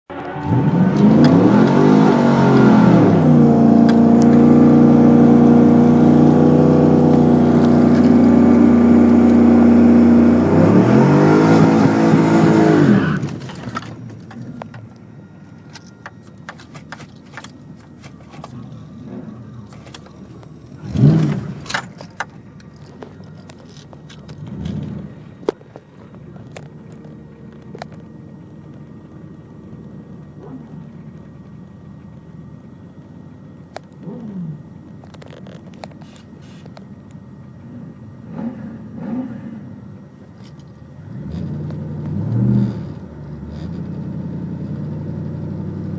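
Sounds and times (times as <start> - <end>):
car engine revving high: 0.1 - 14.0, 20.8 - 21.9, 37.8 - 39.9.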